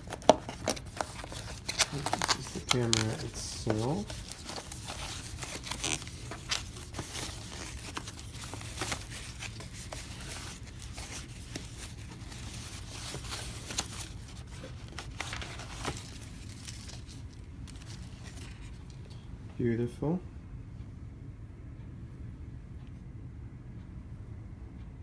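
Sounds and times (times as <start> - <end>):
plastic packaging crinkling: 0.0 - 18.9.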